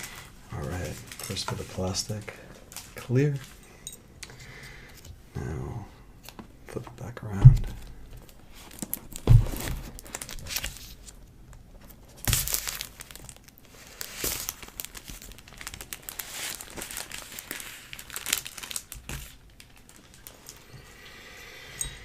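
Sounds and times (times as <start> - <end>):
plastic wrap crinkling: 0.0 - 3.6, 7.7 - 20.8.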